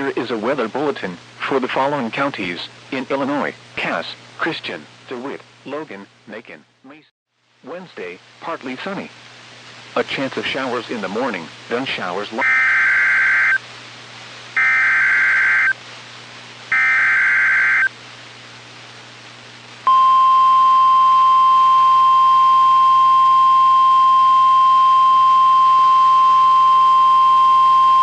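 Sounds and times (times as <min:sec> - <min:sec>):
warning alarm tone: 0:12.4 - 0:13.6, 0:14.6 - 0:15.8, 0:16.7 - 0:17.9, 0:19.9 - 0:28.0
digital data bursts: 0:14.6 - 0:15.8, 0:16.7 - 0:17.9.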